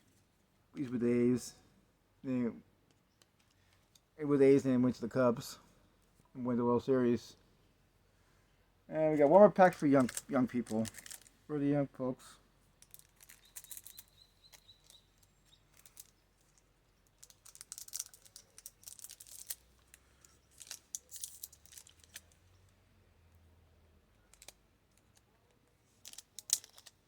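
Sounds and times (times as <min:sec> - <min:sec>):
wrapper tearing and crinkling: 0:09.9 - 0:11.3, 0:17.2 - 0:20.0, 0:20.6 - 0:22.3, 0:26.0 - 0:27.0.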